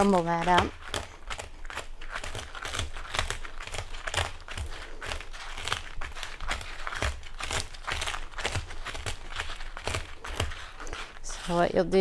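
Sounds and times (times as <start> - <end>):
food chopper crunching bacon: 0.0 - 12.0.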